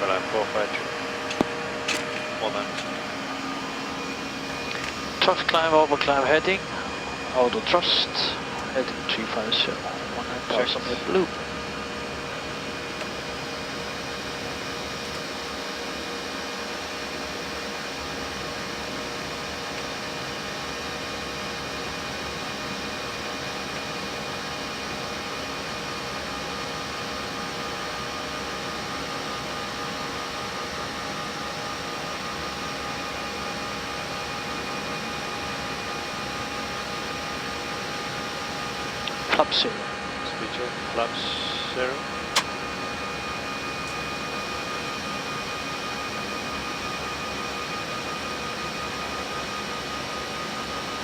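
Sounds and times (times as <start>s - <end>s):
steady aircraft systems hum: 0.0s - 51.0s.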